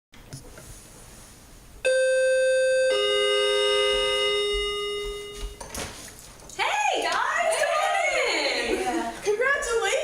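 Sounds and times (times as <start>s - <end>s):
two-note doorbell chime: 1.9s - 5.6s.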